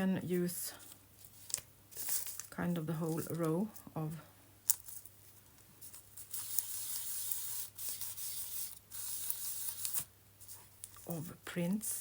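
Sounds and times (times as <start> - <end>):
paper being rubbed: 5.9 - 10.7.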